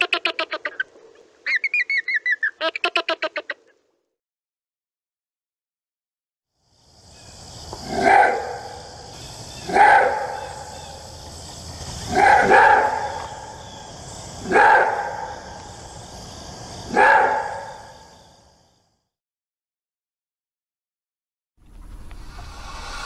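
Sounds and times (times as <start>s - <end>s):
steady hiss: 6.6s - 12.2s, 12.8s - 14.6s, 15.4s - 16.9s, 21.6s - 23.0s
dog barking: 7.9s - 8.8s, 9.7s - 10.7s, 12.1s - 13.3s, 14.4s - 15.4s, 16.9s - 17.9s.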